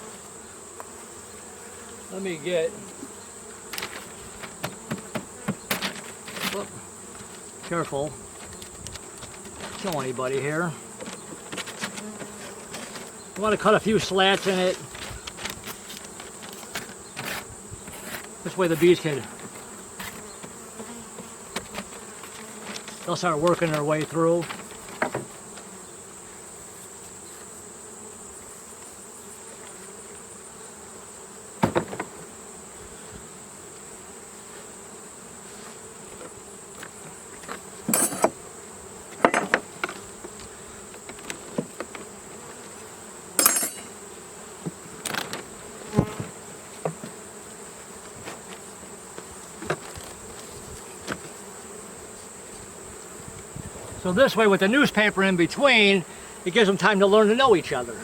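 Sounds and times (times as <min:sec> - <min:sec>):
honeybees buzzing: 0:00.0 - 0:58.0.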